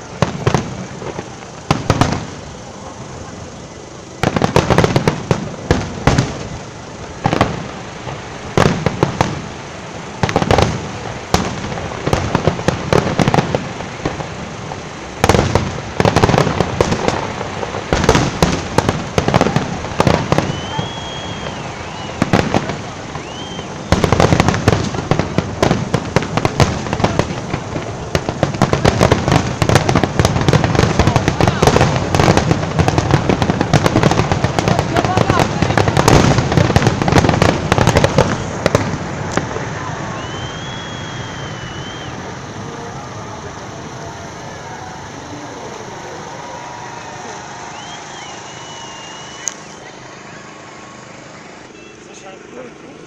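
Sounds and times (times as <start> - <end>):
fireworks bursting with crackle: 0.0 - 53.0
short high whistle: 20.4 - 22.3, 23.1 - 24.0, 40.0 - 42.3, 44.6 - 50.4.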